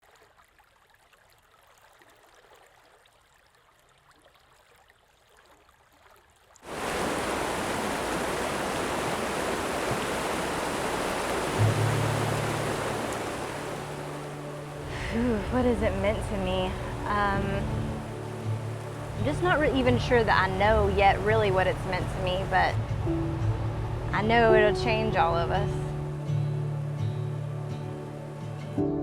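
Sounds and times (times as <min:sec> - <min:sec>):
rushing water roar: 0:06.6 - 0:28.7
low steady hum: 0:06.7 - 0:26.2.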